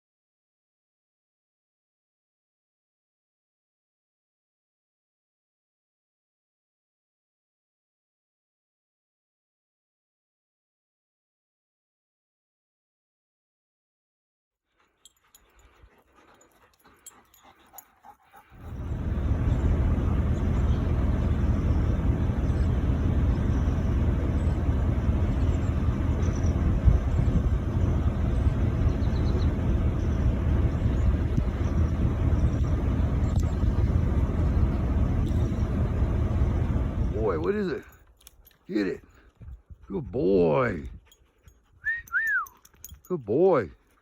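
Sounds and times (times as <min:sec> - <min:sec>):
steady low rumble: 0:18.5 - 0:38.0.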